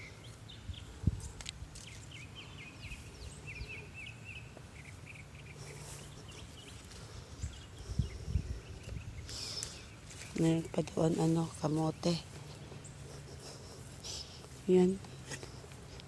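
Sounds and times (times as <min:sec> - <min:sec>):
low outdoor rumble: 0:00.0 - 0:16.0
small birds chirping: 0:00.0 - 0:16.0.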